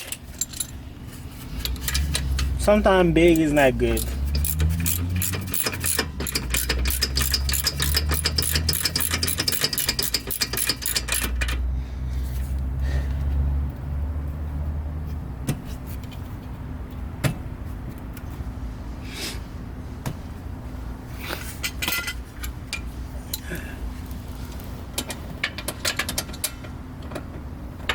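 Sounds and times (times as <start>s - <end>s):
socket ratchet clicking: 3.4s - 11.6s.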